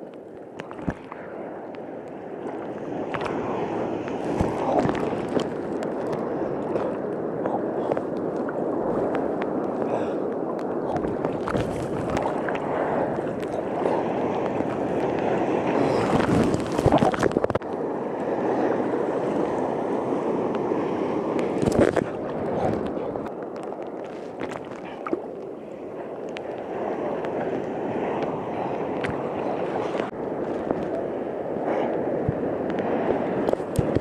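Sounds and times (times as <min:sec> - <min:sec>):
sharp water splashes: 0:00.0 - 0:17.7
seawater churning and sloshing: 0:00.0 - 0:34.0.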